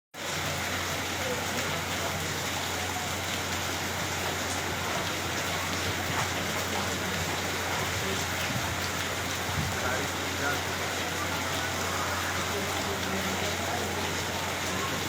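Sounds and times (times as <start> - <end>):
heavy rain splashing: 0.2 - 15.0.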